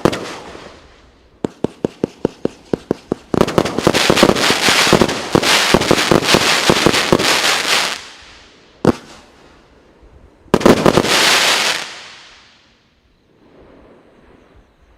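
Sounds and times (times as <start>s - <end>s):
fireworks bangs and crackles: 0.0s - 9.7s, 10.5s - 12.6s.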